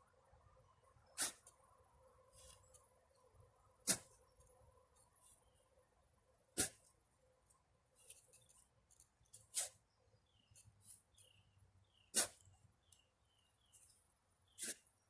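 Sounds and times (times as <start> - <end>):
shovel striking soil: 1.2 - 1.5, 3.8 - 4.2, 6.6 - 6.9, 9.3 - 9.8, 12.1 - 12.5, 14.5 - 14.9.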